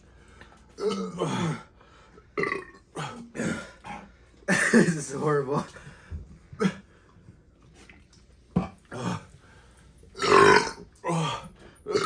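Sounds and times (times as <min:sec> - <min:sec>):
deep burps: 0:00.8 - 0:01.7, 0:02.4 - 0:03.8, 0:04.5 - 0:05.0, 0:10.2 - 0:12.0.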